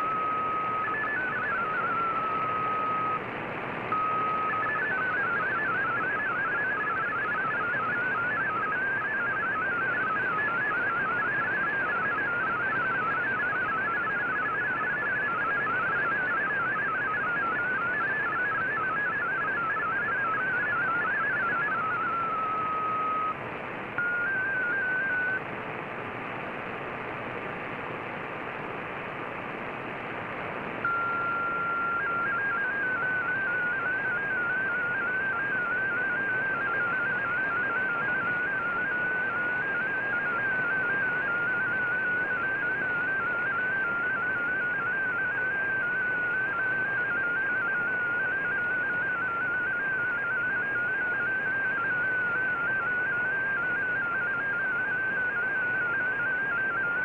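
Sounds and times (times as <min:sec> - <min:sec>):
static hiss: 0:23.3 - 0:57.0.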